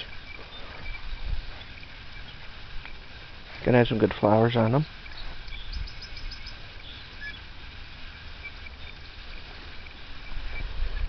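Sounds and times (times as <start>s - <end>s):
faint high bird chirps: 0.0s - 2.5s, 4.9s - 7.4s.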